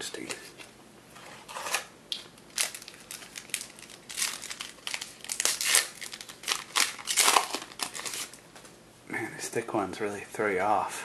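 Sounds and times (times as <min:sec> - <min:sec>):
plastic wrapper crinkling: 0:01.5 - 0:08.4.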